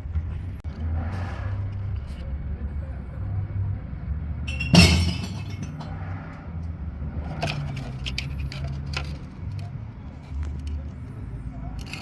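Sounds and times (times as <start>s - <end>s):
clatter of hard objects: 4.5s - 6.0s, 7.3s - 9.7s, 11.8s - 12.0s.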